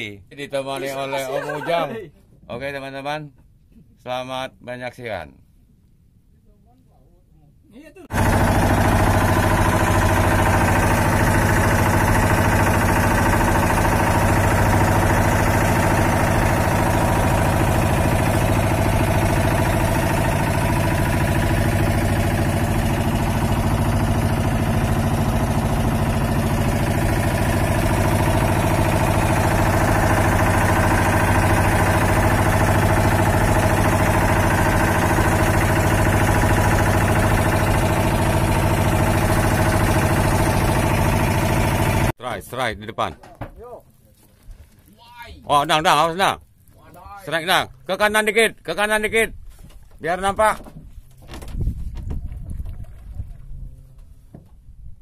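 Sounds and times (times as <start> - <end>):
boat engine running steadily: 8.1 - 42.1.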